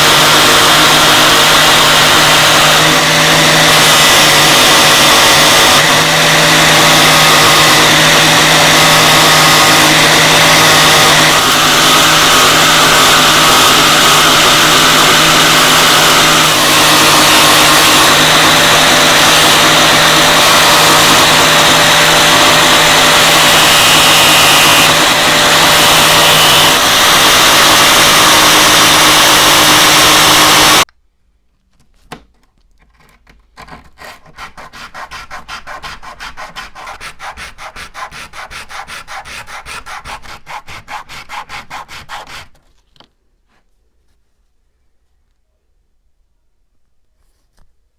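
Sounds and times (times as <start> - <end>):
electric power tool motor hum: 0.0 - 30.8
hand sanding strokes: 34.0 - 42.7.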